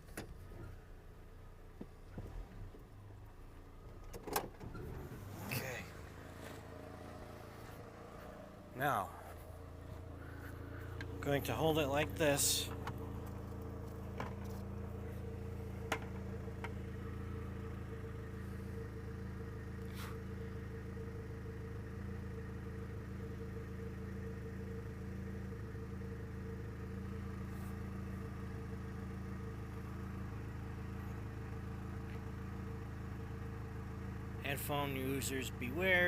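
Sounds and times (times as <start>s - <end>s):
truck engine idling: 0.0s - 36.0s.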